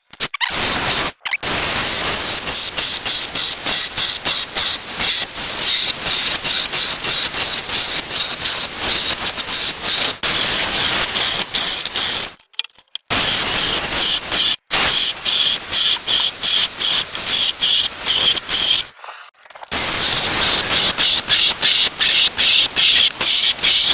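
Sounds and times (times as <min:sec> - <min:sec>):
chainsaw cutting wood: 0:19.8 - 0:23.9.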